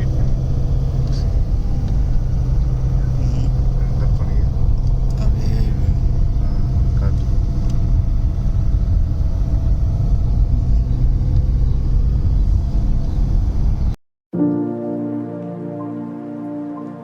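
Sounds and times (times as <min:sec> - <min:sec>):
moving car rumble: 0:00.0 - 0:14.7.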